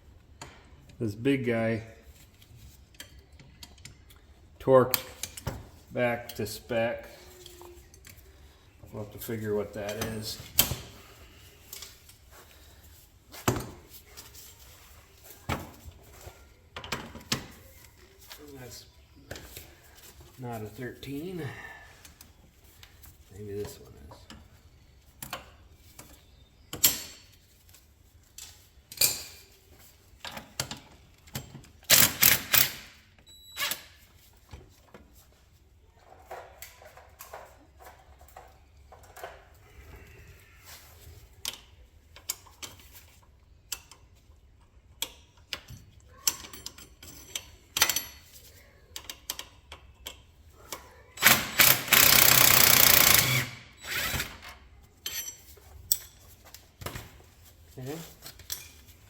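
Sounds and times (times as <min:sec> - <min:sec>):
ratchet clicking: 0:31.9 - 0:32.9, 0:51.2 - 0:54.4
metal tools clinking and knocking: 0:45.0 - 0:50.2, 0:55.0 - 0:56.4, 0:58.2 - 0:59.0.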